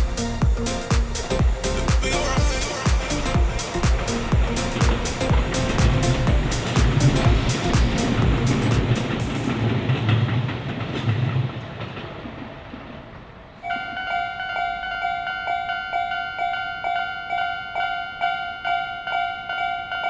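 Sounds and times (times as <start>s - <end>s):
train wheels clicking over rail joints: 3.0s - 14.5s
level crossing alarm ringing: 13.6s - 20.0s.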